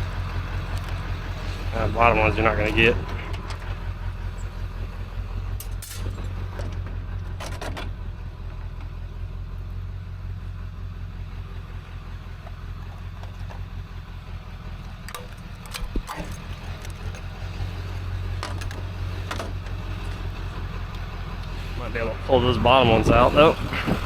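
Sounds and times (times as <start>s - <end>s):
vehicle engine idling: 0.0s - 24.0s
metallic clinks of scrap: 5.6s - 6.3s.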